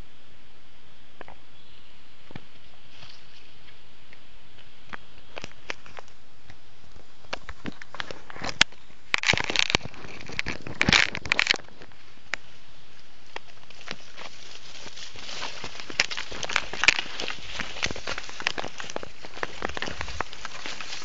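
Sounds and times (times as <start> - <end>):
footsteps on dry leaves: 7.6 - 21.0.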